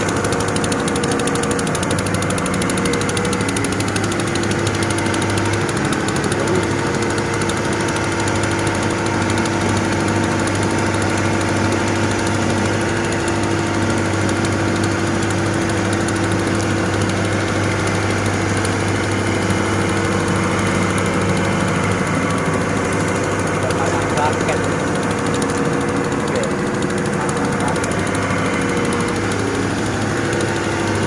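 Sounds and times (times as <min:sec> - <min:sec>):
heavy diesel engine running: 0:00.0 - 0:31.0.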